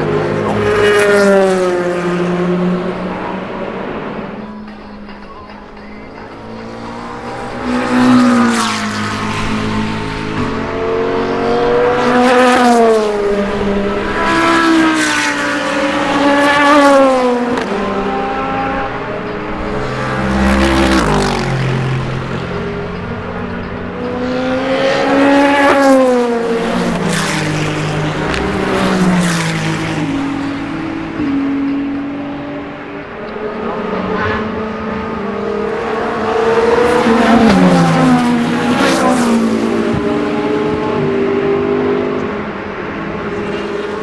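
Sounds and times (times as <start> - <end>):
race cars passing at speed: 0.0 - 44.0.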